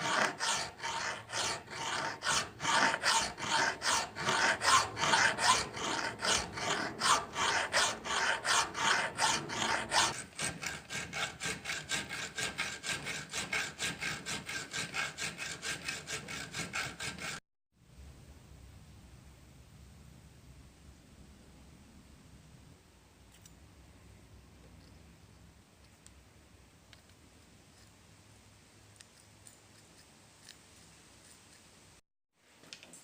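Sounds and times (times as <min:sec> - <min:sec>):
hand tool rasping on steel: 0:00.0 - 0:17.4.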